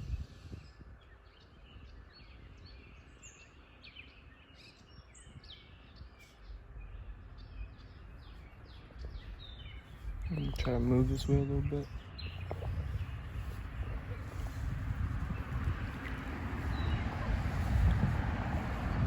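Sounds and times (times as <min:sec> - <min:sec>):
small birds chirping: 0:00.0 - 0:19.0
low steady rumble: 0:06.0 - 0:19.0.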